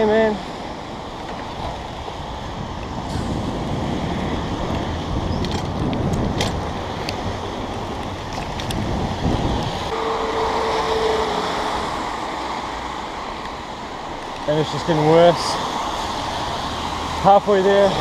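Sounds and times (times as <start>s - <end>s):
wind buffeting microphone: 0.0s - 17.2s
passing traffic: 0.0s - 18.0s
steady whine: 9.9s - 12.6s.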